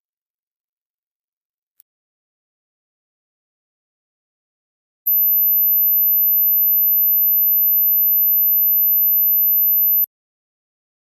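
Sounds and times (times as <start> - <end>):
high-pitched steady pure tone: 5.1 - 10.1.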